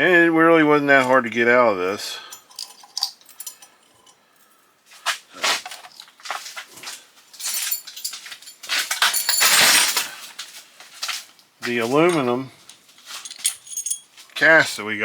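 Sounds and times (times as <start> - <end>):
metal scrap clinking and rattling: 2.3 - 4.2, 7.4 - 10.4, 13.1 - 14.2.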